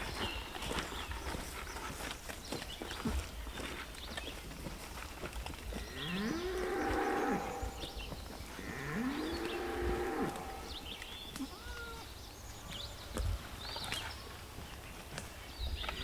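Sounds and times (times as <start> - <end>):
cow mooing: 5.9 - 7.9, 8.6 - 10.8.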